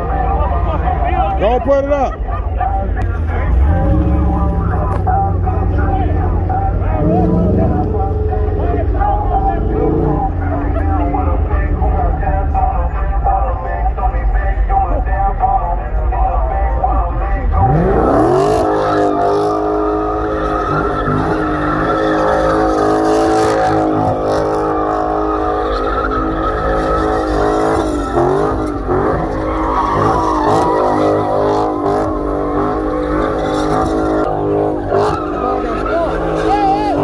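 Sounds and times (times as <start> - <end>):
car engine revving: 0.0 - 37.0
tyres squealing: 17.9 - 37.0.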